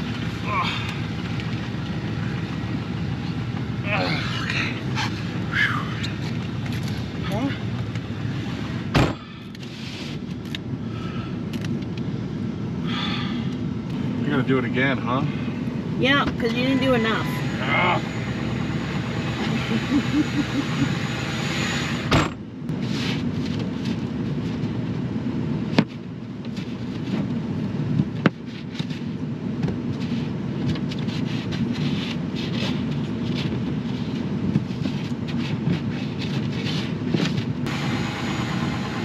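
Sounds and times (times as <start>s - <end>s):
diesel engine idling: 0.0s - 22.8s, 31.2s - 39.0s.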